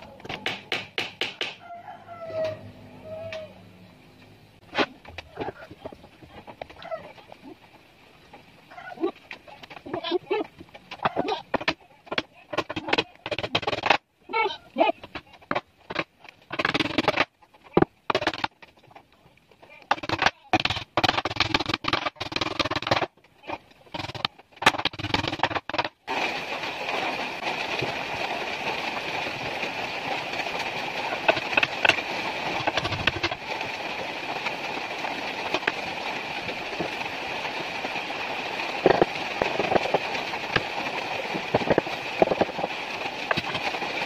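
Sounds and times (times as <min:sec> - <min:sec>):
clicks and rattles: 0:15.0 - 0:26.2, 0:30.2 - 0:37.2, 0:38.6 - 0:44.0.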